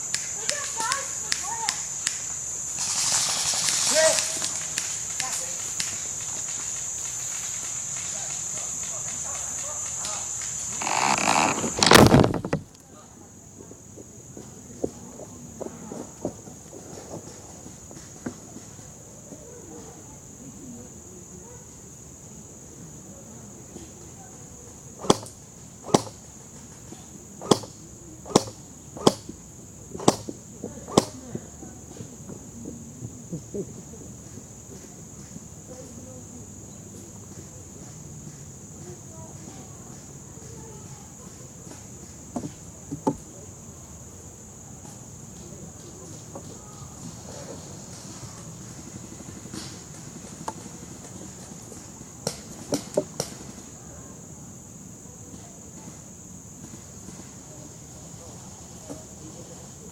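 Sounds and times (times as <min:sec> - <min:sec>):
steady high hiss: 0:00.0 - 0:59.9
faint ticks: 0:03.6 - 0:12.9.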